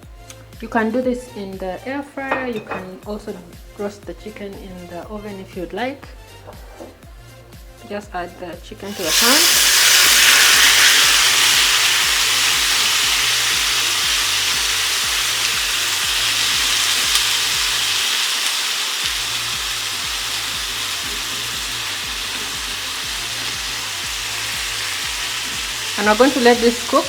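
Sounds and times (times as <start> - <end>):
chicken sizzling in oil: 8.9 - 27.0.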